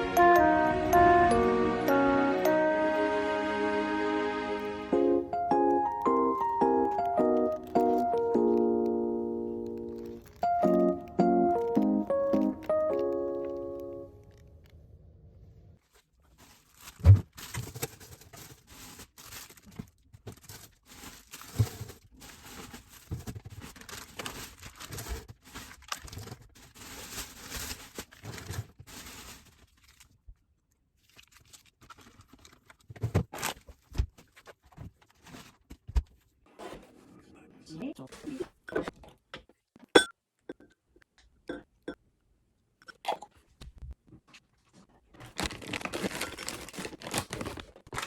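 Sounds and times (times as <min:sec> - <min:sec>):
packaging rustling and crinkling: 0:06.4 - 0:08.6, 0:09.7 - 0:14.4, 0:15.8 - 0:30.3, 0:30.9 - 0:35.8, 0:45.1 - 0:48.0.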